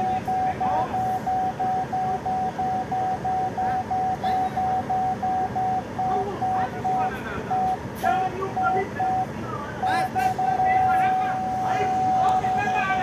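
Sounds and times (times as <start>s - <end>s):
parking sensor beeping: 0.0s - 13.0s.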